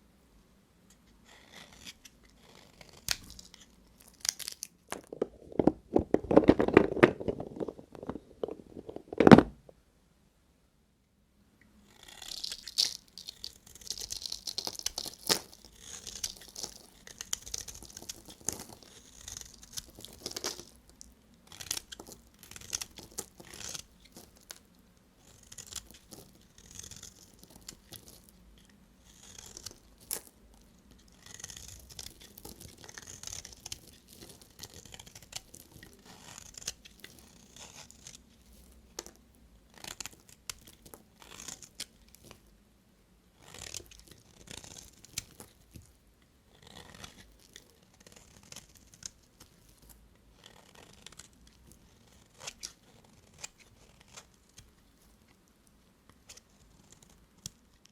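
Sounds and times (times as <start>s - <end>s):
knife cutting bar soap: 1.2s - 9.4s, 11.9s - 24.6s, 25.2s - 30.3s, 31.0s - 42.4s.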